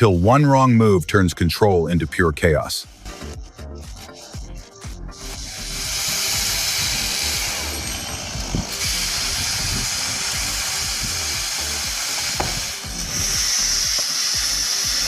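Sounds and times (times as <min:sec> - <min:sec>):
background music: 0:00.0 - 0:15.0
chainsaw cutting wood: 0:05.2 - 0:15.0.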